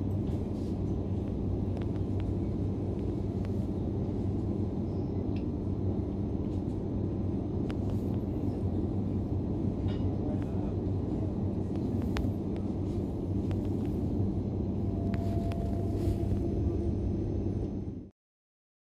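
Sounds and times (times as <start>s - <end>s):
train wheels rumbling: 7.5s - 17.3s.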